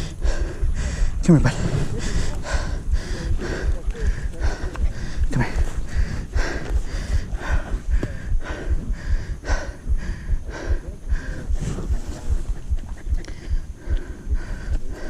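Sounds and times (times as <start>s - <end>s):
hard rapid breathing: 0.0s - 15.0s
microphone rumble: 0.0s - 15.0s.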